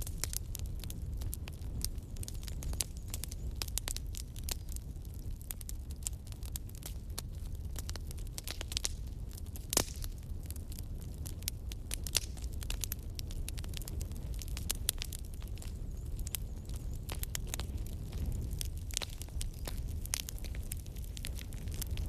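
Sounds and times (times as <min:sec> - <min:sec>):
fire crackling: 0:00.0 - 0:22.0.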